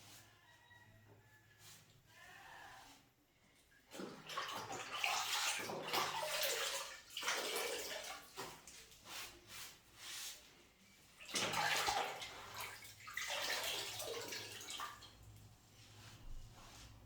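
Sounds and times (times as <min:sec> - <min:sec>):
wet cloth wiping floor: 0:00.0 - 0:17.0
water splashing: 0:03.9 - 0:08.7, 0:11.2 - 0:15.2.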